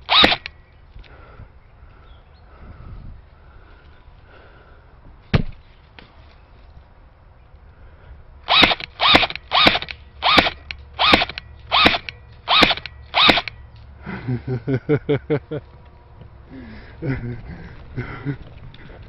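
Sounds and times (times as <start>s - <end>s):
brief mechanical whir: 0.0s - 0.5s, 8.5s - 13.6s
airsoft gun shots: 0.1s - 0.5s, 8.5s - 13.6s
sharp crack: 0.1s - 0.5s, 8.5s - 13.6s.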